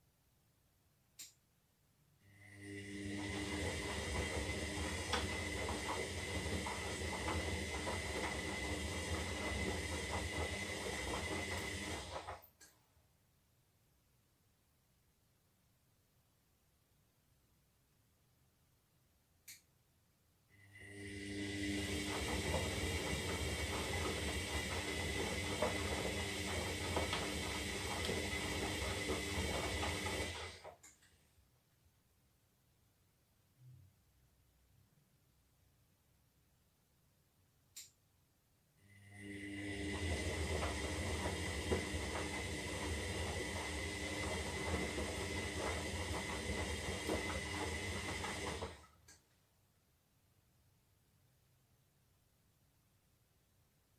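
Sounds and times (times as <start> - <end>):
faint click: 1.2 - 1.4, 19.4 - 19.7, 37.7 - 38.0
washing machine motor whine: 2.6 - 12.4, 20.8 - 30.7, 39.0 - 49.0
laundry and water tumbling: 3.2 - 12.4, 21.7 - 30.7, 39.8 - 48.9.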